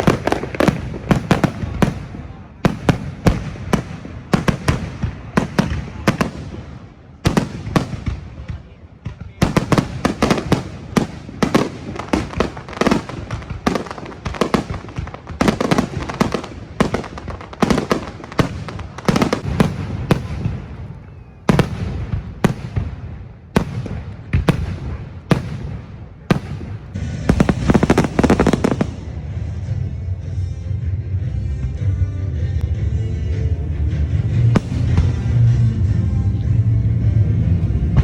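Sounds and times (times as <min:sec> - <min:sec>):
fireworks crackling: 0:00.0 - 0:29.4.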